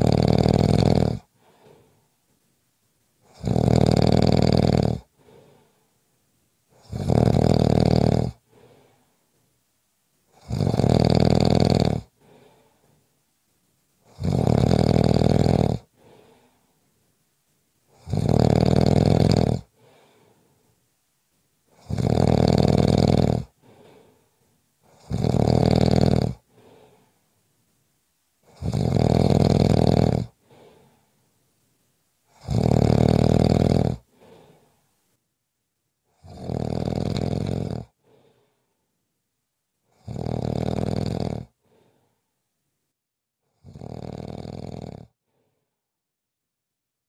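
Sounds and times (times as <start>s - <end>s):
person snoring: 0.0s - 2.0s, 3.2s - 5.7s, 6.7s - 9.0s, 10.3s - 12.8s, 14.1s - 16.6s, 17.9s - 20.4s, 21.7s - 24.2s, 24.8s - 27.1s, 28.4s - 31.0s, 32.3s - 34.7s, 36.1s - 38.6s, 39.9s - 42.0s, 43.5s - 45.2s.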